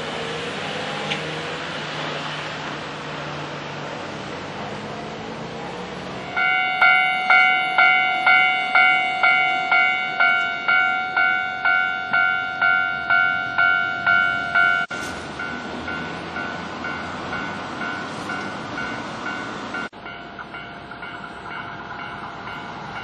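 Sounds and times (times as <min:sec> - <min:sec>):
level crossing warning bell clanging: 0:06.0 - 0:23.0.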